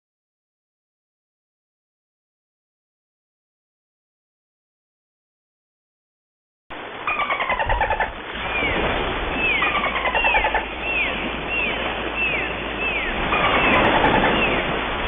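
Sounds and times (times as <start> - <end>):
dolphin whistles: 9.4 - 14.6.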